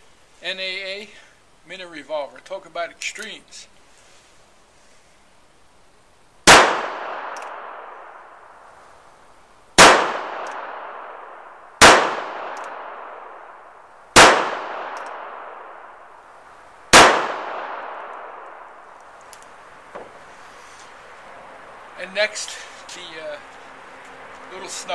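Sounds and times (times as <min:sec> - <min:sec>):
revolver shots echoing: 0:09.8 - 0:13.5, 0:14.2 - 0:16.0, 0:16.9 - 0:18.8.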